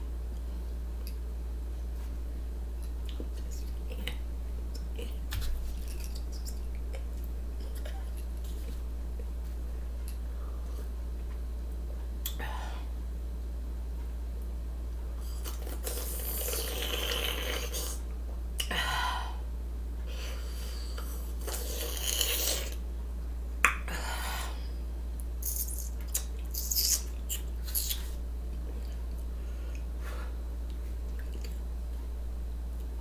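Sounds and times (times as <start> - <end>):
steady low hum: 0.0 - 33.0
chewing and mouth noises: 2.8 - 9.3, 25.2 - 29.9, 30.6 - 31.7.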